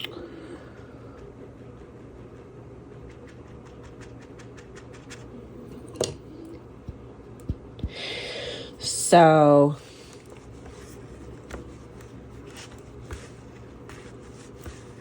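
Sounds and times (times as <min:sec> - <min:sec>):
light tapping and scratching: 0:10.1 - 0:15.0.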